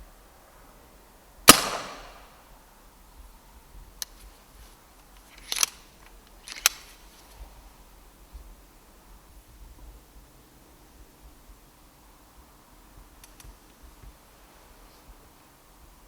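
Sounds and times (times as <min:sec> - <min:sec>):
air rifle shot: 0:01.5 - 0:02.4.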